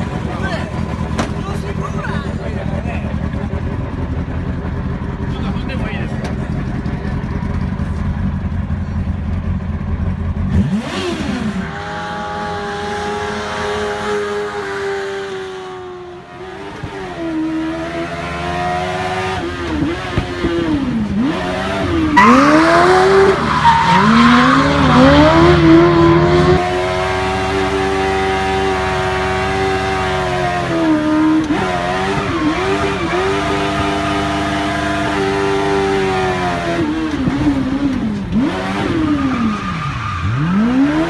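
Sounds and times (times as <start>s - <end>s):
car engine revving high: 10.2s - 41.0s
tyres squealing: 21.2s - 26.6s, 29.3s - 41.0s.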